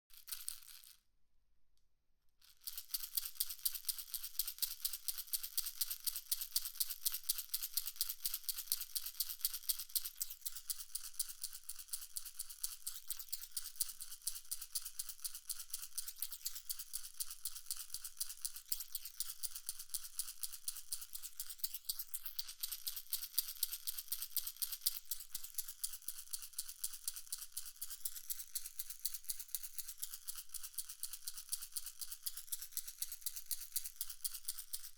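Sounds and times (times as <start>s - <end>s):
rapid high-pitched noise clicks: 8.3s - 34.9s.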